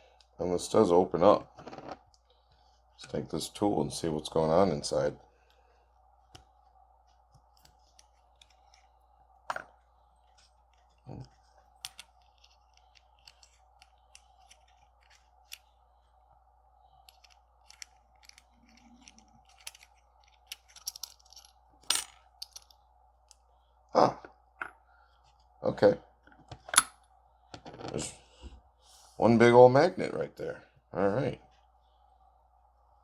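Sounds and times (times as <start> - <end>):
faint steady hum: 0.0 - 33.0
small tool clicks and scrapes: 11.9 - 15.7.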